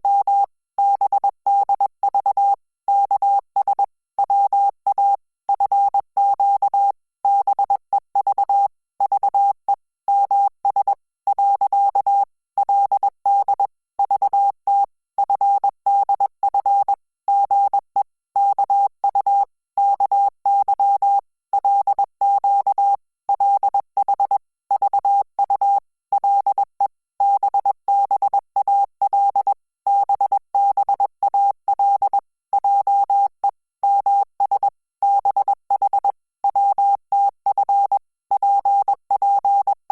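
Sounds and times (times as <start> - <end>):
morse code beeps: 27.3 - 39.8.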